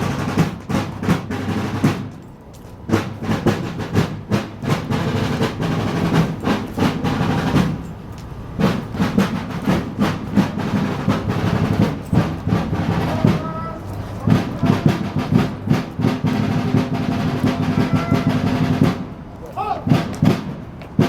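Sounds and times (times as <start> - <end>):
snare drums marching cadence: 0.0 - 21.0.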